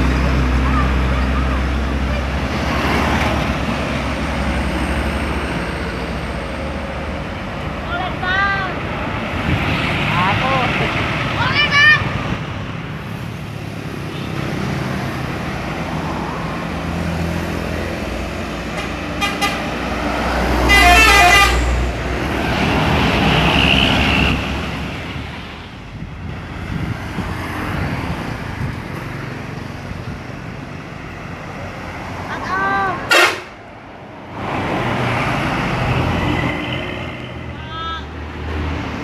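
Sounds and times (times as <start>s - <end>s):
heavy vehicle engine rumble: 0.0s - 39.0s
musical vehicle horn: 18.7s - 19.7s, 20.6s - 21.8s, 33.1s - 33.6s.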